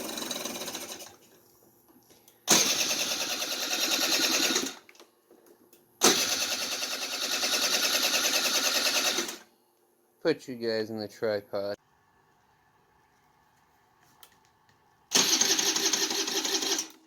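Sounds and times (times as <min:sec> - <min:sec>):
scooter starter cranking engine: 0:00.0 - 0:01.2, 0:02.5 - 0:04.8, 0:06.0 - 0:09.4, 0:15.1 - 0:17.0.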